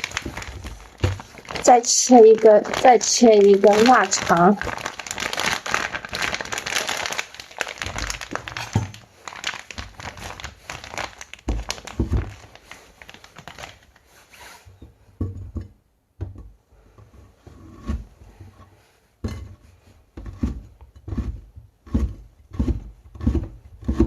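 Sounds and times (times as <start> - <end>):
plastic wrapping crinkling and tearing: 0.0 - 14.5.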